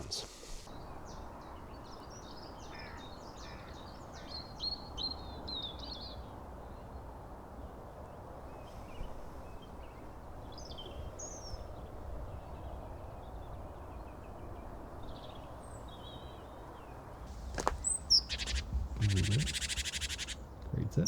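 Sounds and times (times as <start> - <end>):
small songbirds chirping: 0.0 - 21.0
distant road traffic rumble: 16.5 - 21.0.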